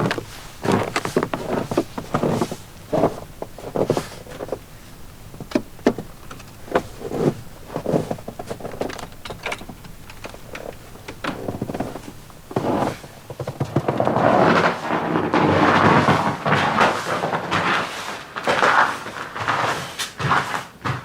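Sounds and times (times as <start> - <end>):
footsteps on snow: 0.0 - 14.6.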